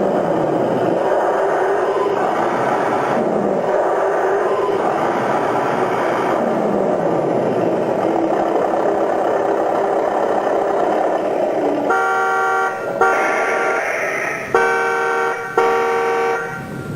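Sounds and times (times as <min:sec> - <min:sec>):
simulated truck engine running: 0:00.0 - 0:16.9
truck horn blasts: 0:11.8 - 0:16.9.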